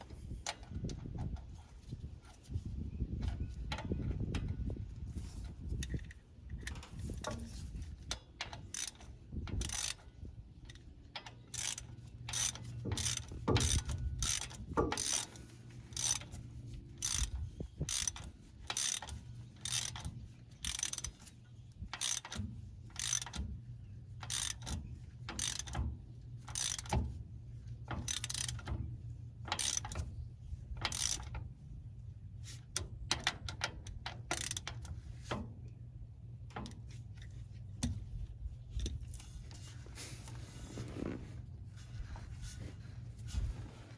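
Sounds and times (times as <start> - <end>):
steady low hum: 0.0 - 43.9
ratchet wrench clicking: 8.4 - 10.1, 10.7 - 16.4, 17.0 - 23.6, 24.2 - 27.1, 27.9 - 28.8, 29.5 - 30.1, 30.8 - 31.5, 32.8 - 35.0.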